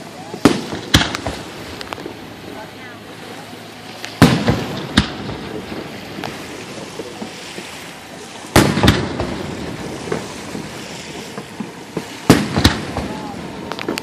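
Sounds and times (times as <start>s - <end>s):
fireworks crackling: 0.0s - 14.0s
fireworks boom: 0.3s - 2.2s, 4.2s - 7.4s, 8.5s - 14.0s.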